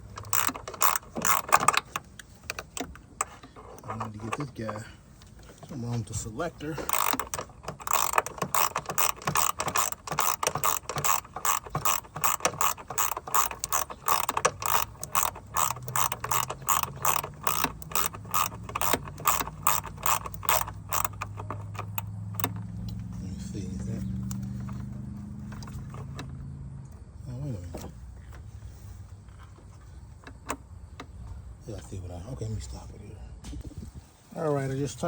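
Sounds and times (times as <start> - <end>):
ratchet wrench clicking: 0.0 - 4.8, 6.2 - 23.1.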